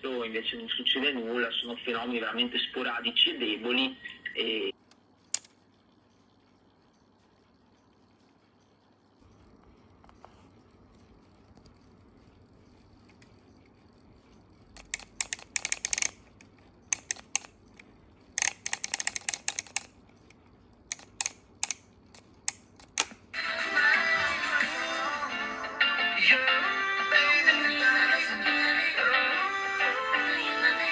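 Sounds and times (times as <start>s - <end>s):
music from radio: 23.4s - 30.9s.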